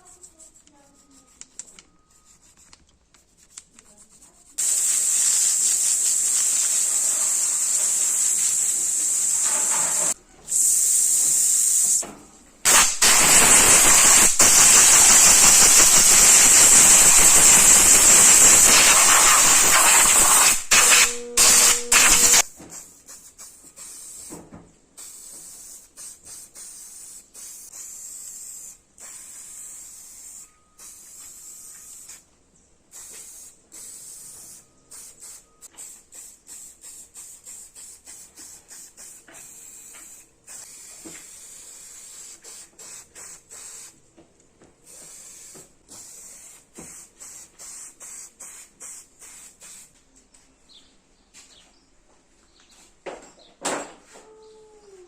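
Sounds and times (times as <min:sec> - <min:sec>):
spray gun hissing in bursts: 0:04.6 - 0:12.0, 0:12.7 - 0:24.3, 0:25.0 - 0:32.2, 0:32.9 - 0:43.9, 0:44.8 - 0:49.8.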